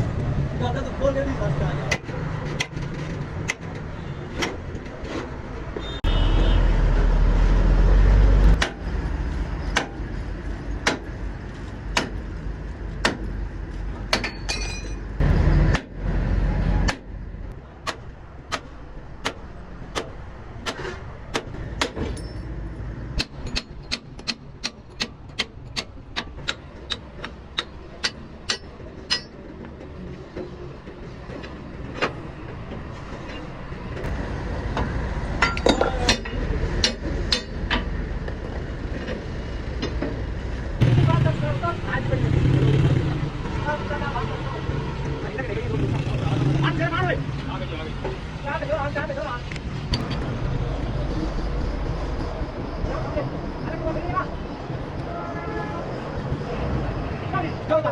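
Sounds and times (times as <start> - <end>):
heavy vehicle rumbling by: 36.3 - 48.7.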